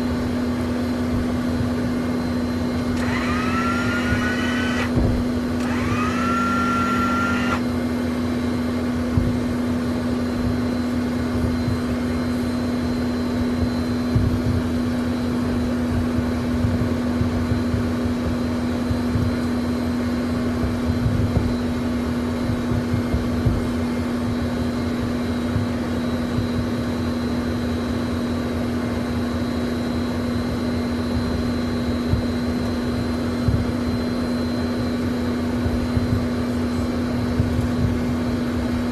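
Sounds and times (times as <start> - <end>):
jet engine hum: 0.0 - 38.9
short rising whine: 2.2 - 8.6
low rumbling and bumps: 4.1 - 5.4.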